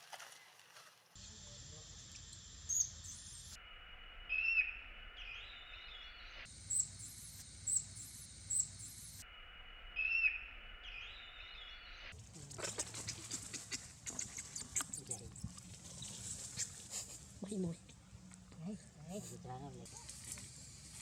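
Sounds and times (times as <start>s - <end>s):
hiss: 20.0s - 21.0s.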